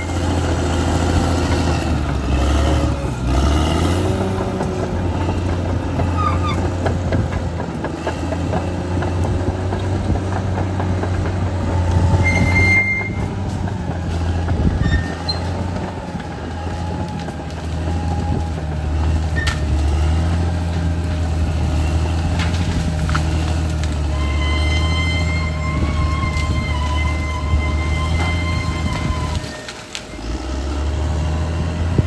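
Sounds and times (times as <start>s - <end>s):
bulldozer diesel engine under load: 0.0s - 32.0s
high squeaks and clanks: 5.9s - 8.2s, 11.0s - 16.0s, 19.2s - 19.8s, 23.8s - 30.4s.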